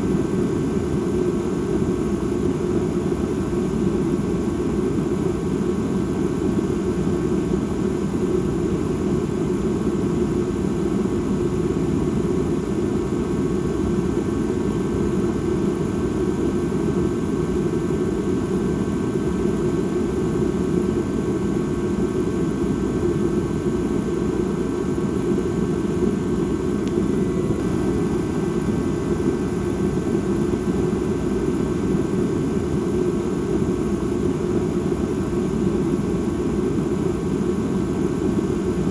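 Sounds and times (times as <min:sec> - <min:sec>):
faint high tones and hiss: 0:00.0 - 0:38.9
low rumbling ambient drone: 0:22.1 - 0:37.5.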